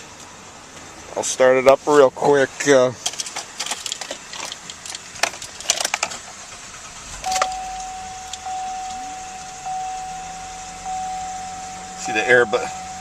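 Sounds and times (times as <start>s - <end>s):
car engine starting and idling: 0.0s - 13.0s
dashboard warning chime: 7.2s - 13.0s.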